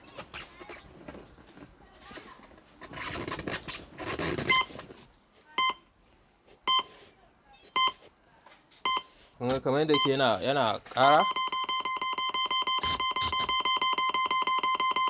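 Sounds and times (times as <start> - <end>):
speed controller beeping: 11.0 - 15.0.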